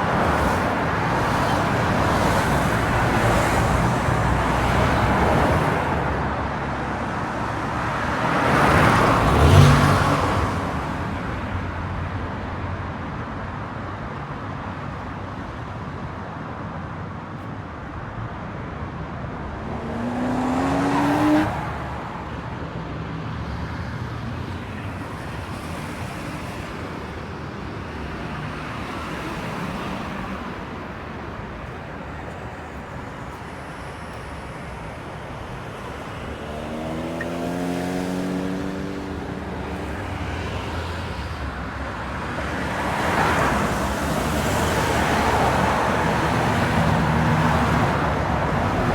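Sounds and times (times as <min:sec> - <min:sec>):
cars driving past: 0:07.4 - 0:11.4, 0:19.3 - 0:27.2, 0:27.9 - 0:48.9
vehicle engine accelerating: 0:19.7 - 0:21.8, 0:36.3 - 0:39.6, 0:48.5 - 0:48.9.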